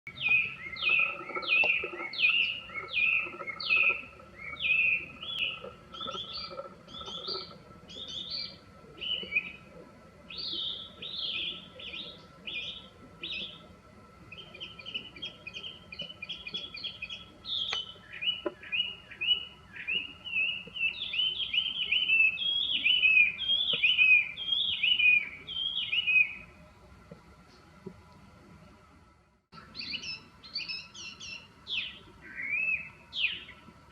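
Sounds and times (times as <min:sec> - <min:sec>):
bird singing whistled phrases: 0:14.4 - 0:26.4, 0:29.6 - 0:33.5.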